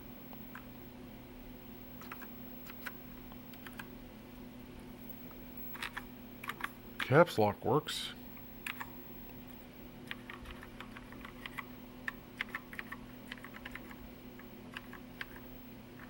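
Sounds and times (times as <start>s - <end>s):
faint steady hum: 0.0s - 16.0s
keyboard keys clicking: 10.1s - 14.0s, 14.7s - 15.4s.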